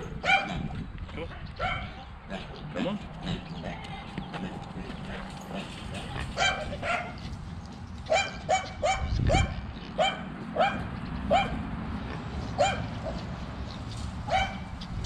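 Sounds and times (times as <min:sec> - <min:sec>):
dog barking: 0:00.0 - 0:00.6, 0:01.3 - 0:02.4, 0:06.3 - 0:07.2, 0:08.1 - 0:11.6, 0:12.6 - 0:13.2, 0:14.3 - 0:14.7.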